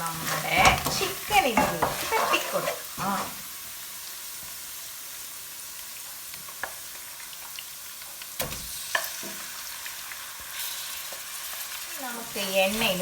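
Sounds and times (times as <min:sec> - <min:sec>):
spices sizzling in oil: 0:00.0 - 0:13.0
utensil knocking against pan: 0:00.6 - 0:02.1.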